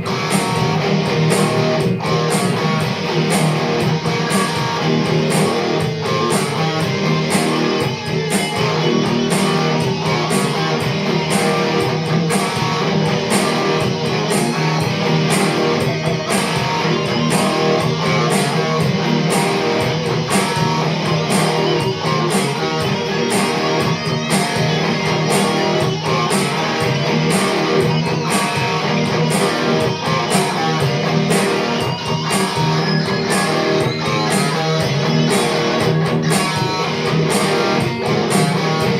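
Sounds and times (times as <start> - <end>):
guitar music with steady beat: 0.0 - 38.9.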